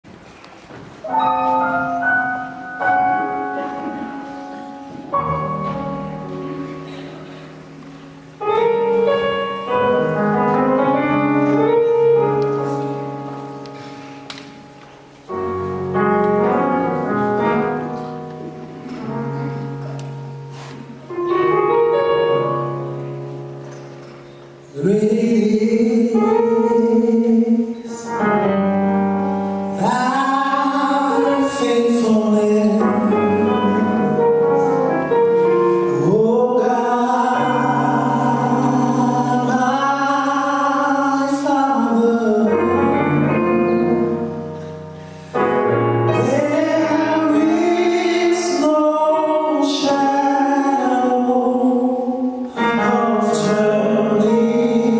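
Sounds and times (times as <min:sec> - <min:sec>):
piano: 0:00.0 - 0:54.9.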